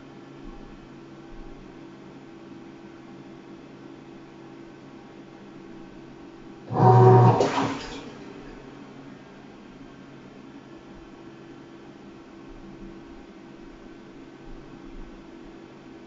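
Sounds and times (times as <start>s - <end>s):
loud mechanical hum: 6.1s - 11.4s.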